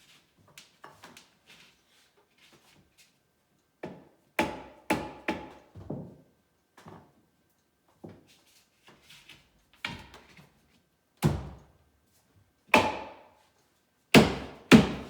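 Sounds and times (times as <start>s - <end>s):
hammer knocking on wood: 14.2s - 15.0s.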